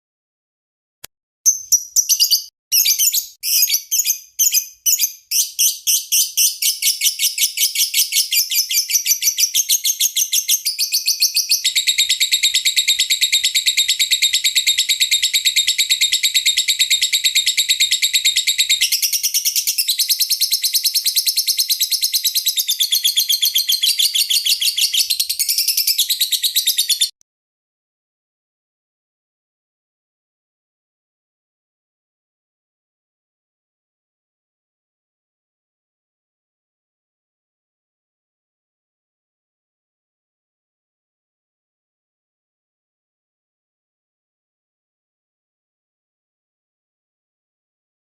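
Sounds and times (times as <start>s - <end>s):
bird chirping and trilling: 1.5s - 27.1s.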